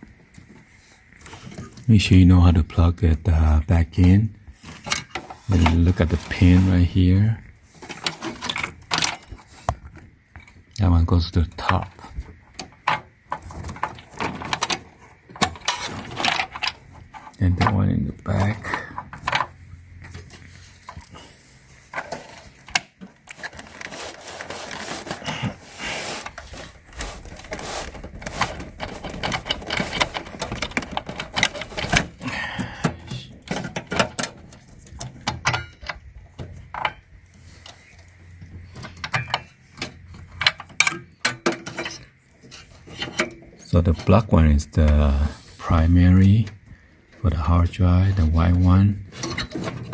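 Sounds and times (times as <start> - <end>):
plastic connectors clicking and scraping: 21.9 - 43.4.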